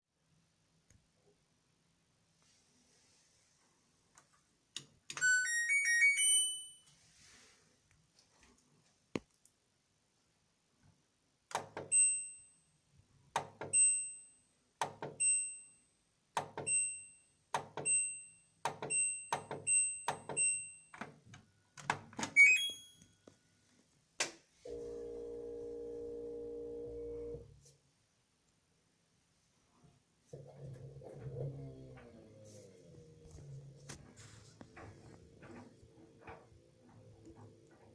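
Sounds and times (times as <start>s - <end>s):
washing machine electric hum: 24.6s - 27.6s, 29.9s - 37.9s.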